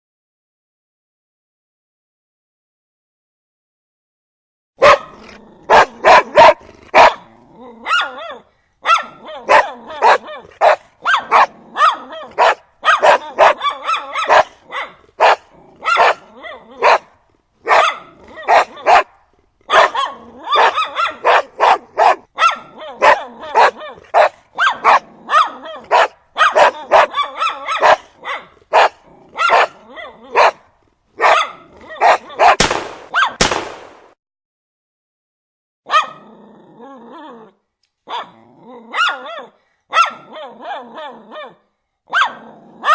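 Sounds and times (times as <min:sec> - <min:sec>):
puppy barking: 0:04.8 - 0:19.1, 0:19.7 - 0:30.6, 0:31.2 - 0:33.4, 0:35.9 - 0:36.2, 0:38.1 - 0:42.9
large dog barking: 0:04.8 - 0:33.4, 0:35.9 - 0:36.3, 0:38.1 - 0:42.9.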